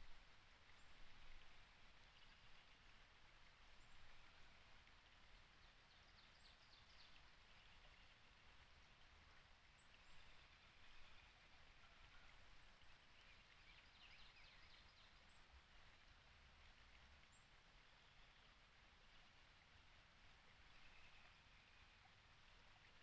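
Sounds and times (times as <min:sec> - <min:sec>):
faint songbird chirps: 0:05.5 - 0:08.5, 0:09.7 - 0:15.6, 0:20.6 - 0:23.0.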